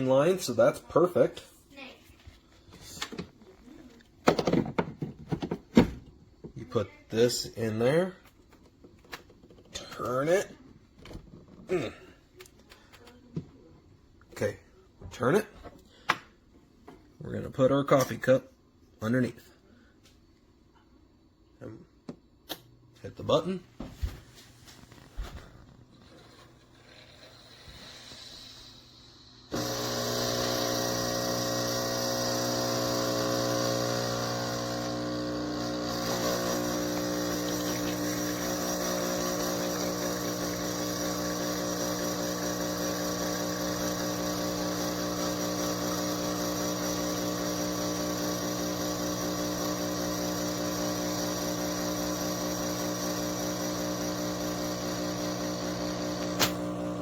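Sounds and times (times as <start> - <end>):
espresso machine pump humming: 26.1 - 57.0.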